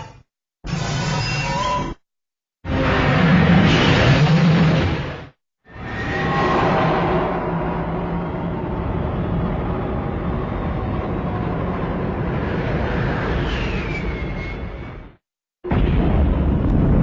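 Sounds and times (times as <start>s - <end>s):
falling whine: 5.7s - 15.1s
mechanical rumble: 5.9s - 17.0s.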